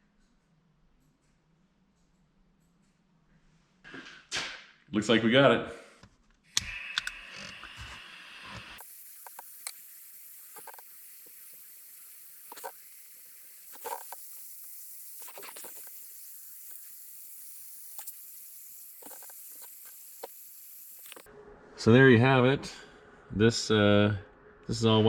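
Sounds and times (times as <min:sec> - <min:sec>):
faint hiss: 0:07.9 - 0:21.3.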